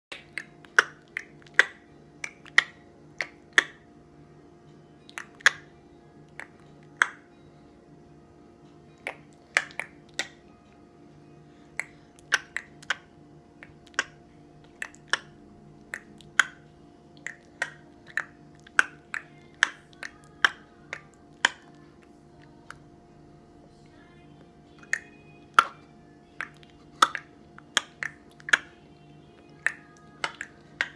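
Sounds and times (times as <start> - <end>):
mouth clicks: 0.1 - 3.9, 5.1 - 5.7, 6.3 - 7.3, 9.0 - 10.4, 11.6 - 16.6, 17.2 - 22.8, 24.8 - 28.8, 29.4 - 30.9
faint steady hum: 0.1 - 30.9.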